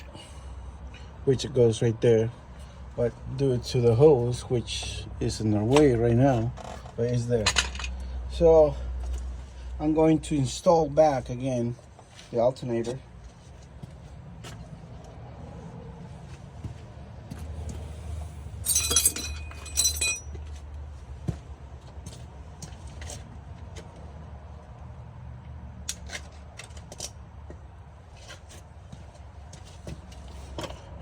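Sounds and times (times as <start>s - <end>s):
metal tools clinking: 6.6s - 8.0s, 18.6s - 20.5s.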